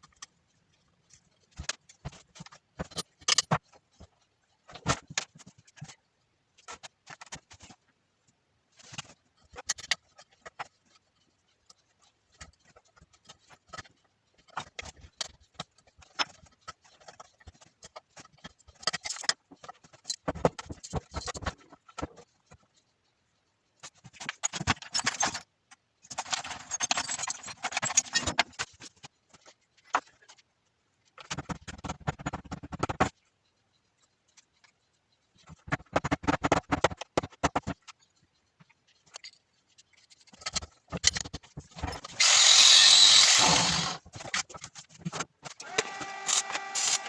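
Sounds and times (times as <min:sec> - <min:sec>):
small metal parts clinking: 0:24.0 - 0:29.5.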